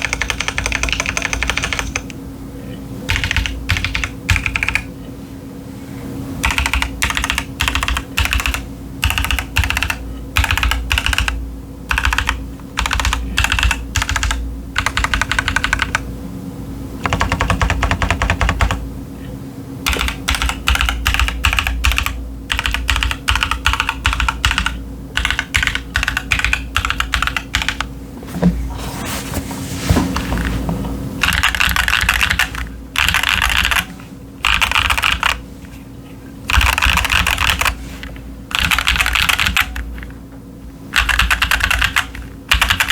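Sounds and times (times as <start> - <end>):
typing on mechanical keyboard: 0.0 - 2.1, 3.1 - 4.9, 6.4 - 16.0, 17.0 - 18.8, 19.9 - 27.9, 31.2 - 35.4, 36.5 - 37.8, 38.5 - 40.1, 40.9 - 42.9.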